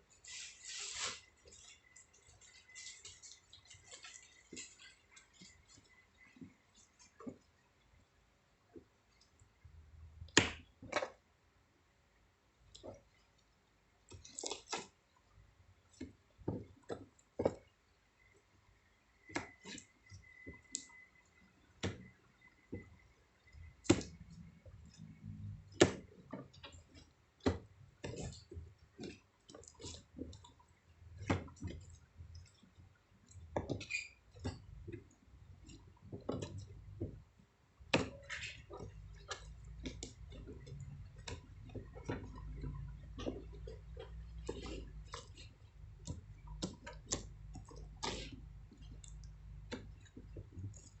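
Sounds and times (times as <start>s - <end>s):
small items and packaging handled: 0.0s - 7.6s.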